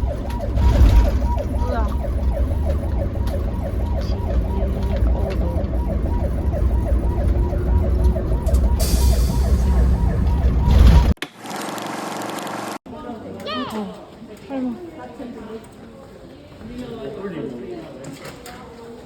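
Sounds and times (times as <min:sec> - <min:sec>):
ambulance siren yelping: 0:00.0 - 0:11.2
vehicle rumble: 0:00.0 - 0:11.2.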